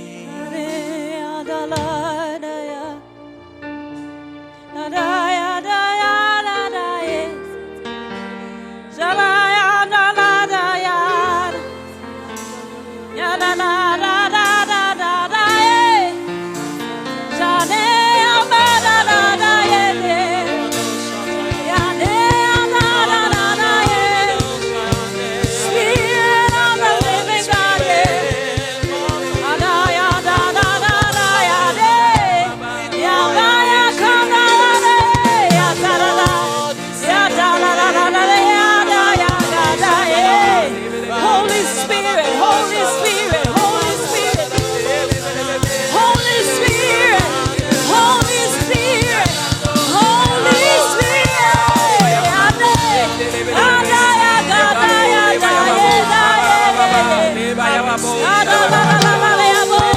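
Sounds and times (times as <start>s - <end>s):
voices singing: 0.0s - 3.5s, 8.8s - 59.9s
gospel band playing: 0.0s - 59.9s
held keyboard notes: 0.0s - 59.9s
low drum beating: 21.2s - 32.5s, 34.8s - 36.7s, 43.3s - 54.2s, 58.4s - 59.9s.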